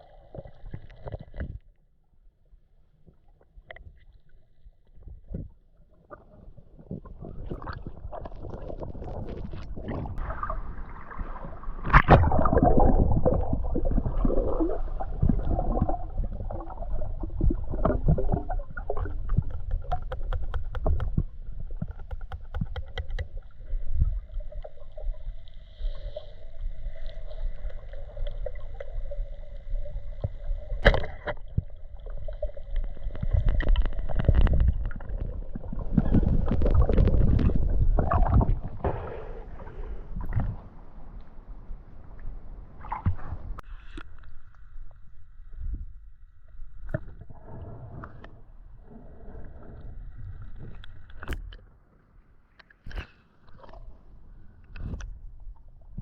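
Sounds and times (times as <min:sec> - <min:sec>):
water gurgling and sloshing: 0:00.0 - 0:56.0
small clicks and knocks: 0:19.5 - 0:23.5.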